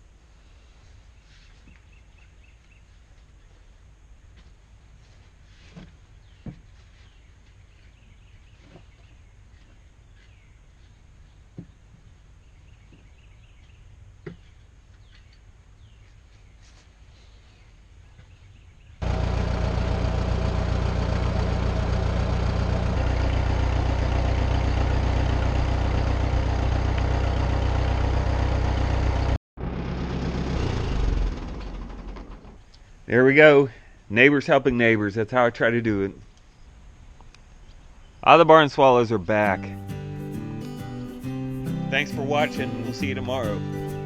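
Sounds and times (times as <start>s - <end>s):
vehicle engine droning: 19.0s - 32.7s.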